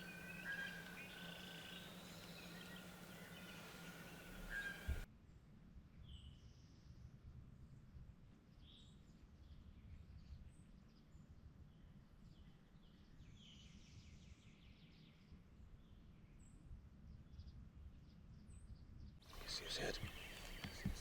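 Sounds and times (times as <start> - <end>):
bird chirps: 0.0 - 5.0, 19.3 - 21.0.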